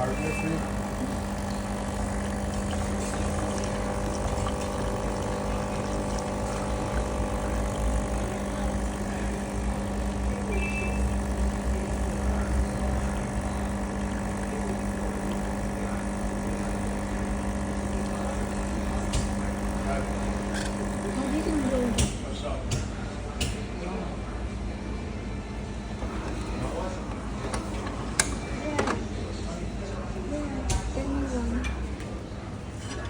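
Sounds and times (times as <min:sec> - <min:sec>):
machine hum: 0:00.0 - 0:22.0.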